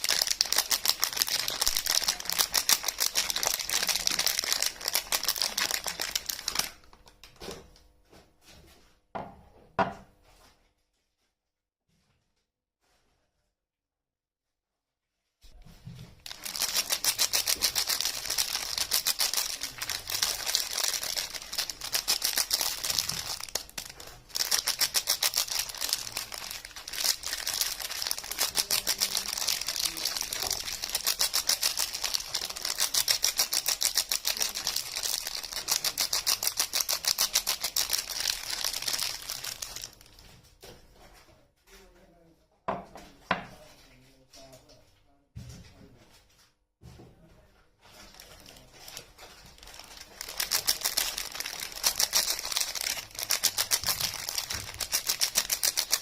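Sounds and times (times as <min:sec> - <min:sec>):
packaging crinkling: 0:00.0 - 0:07.2, 0:16.2 - 0:40.3, 0:47.9 - 0:56.0.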